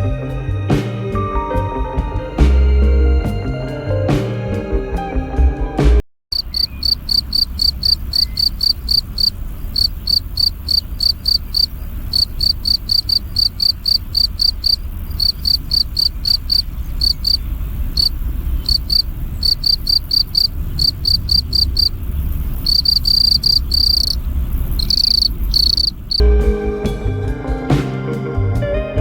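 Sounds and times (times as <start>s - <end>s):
soft music: 0.0s - 6.0s, 26.2s - 29.0s
cricket chirping: 6.4s - 26.2s.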